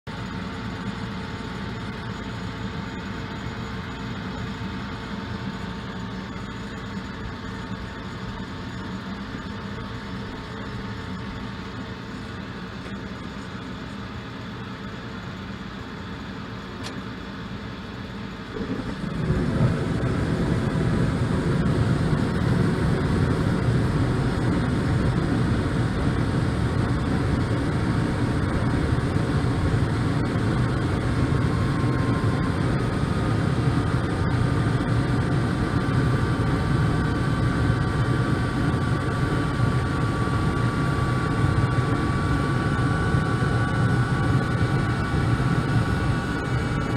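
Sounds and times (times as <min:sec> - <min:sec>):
gas furnace hum: 0:02.9 - 0:46.9
high-pitched whine: 0:18.4 - 0:46.9
low rumble: 0:18.5 - 0:24.8.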